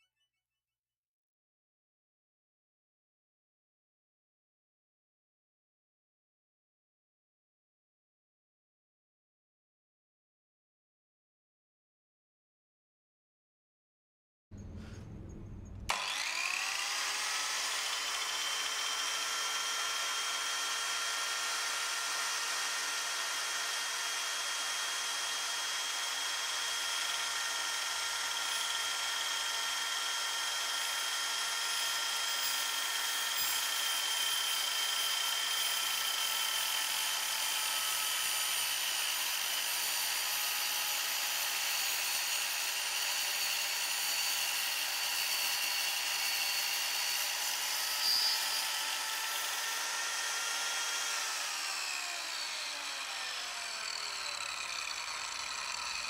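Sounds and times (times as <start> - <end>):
circular saw motor whining: 14.6 - 40.0, 40.9 - 56.0.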